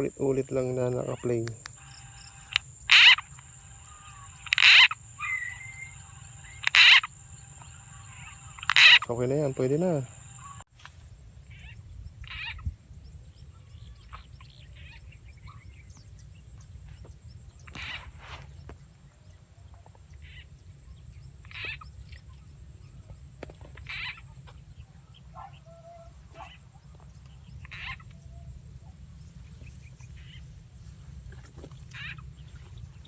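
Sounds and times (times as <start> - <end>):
frog calls: 0.0 - 10.7, 11.4 - 12.8, 17.6 - 18.2, 20.0 - 20.6, 21.4 - 22.4, 23.4 - 30.6, 31.2 - 33.0
thin high hiss: 1.1 - 10.7.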